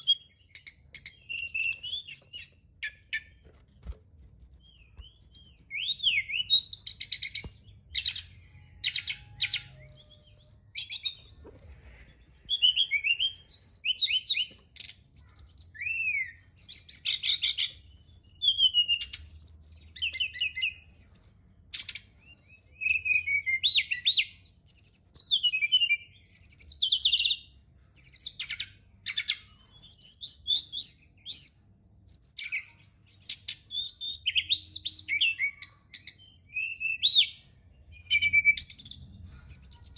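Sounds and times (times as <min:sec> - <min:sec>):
bird singing whistled trills: 0:00.0 - 0:03.4, 0:04.4 - 0:11.3, 0:12.0 - 0:39.9.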